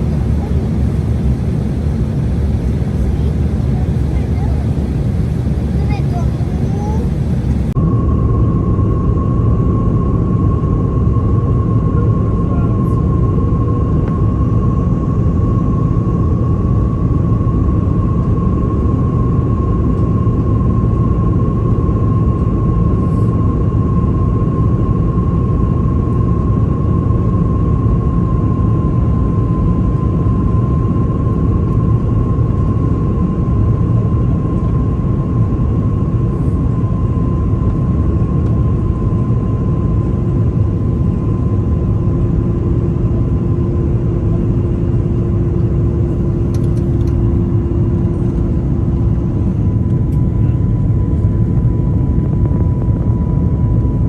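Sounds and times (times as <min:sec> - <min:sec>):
steady whine: 0:00.0 - 0:09.2
low hum: 0:00.0 - 0:10.6
airplane cabin rumble: 0:00.0 - 0:17.3, 0:24.6 - 0:54.0.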